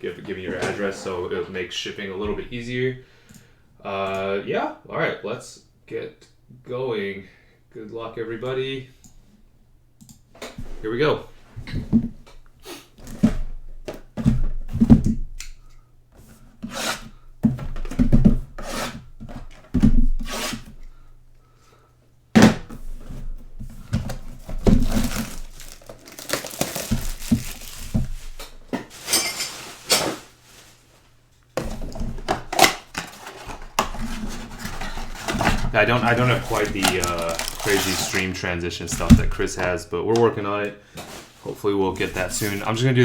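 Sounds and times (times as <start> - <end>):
cardboard packs thudding on table: 23.9 - 28.4, 35.3 - 38.3
plastic and foil wrapping tearing: 24.7 - 30.8, 35.0 - 38.4.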